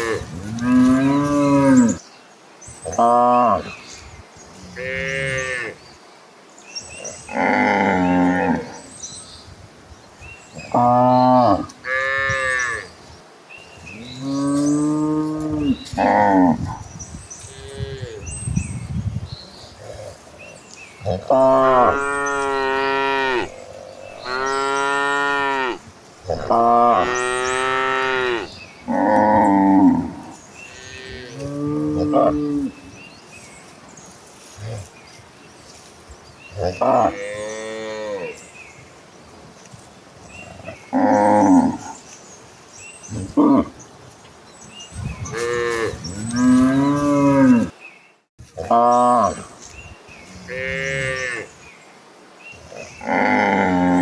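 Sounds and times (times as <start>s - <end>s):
cattle mooing: 0.0s - 2.0s, 21.1s - 23.6s, 45.3s - 47.7s.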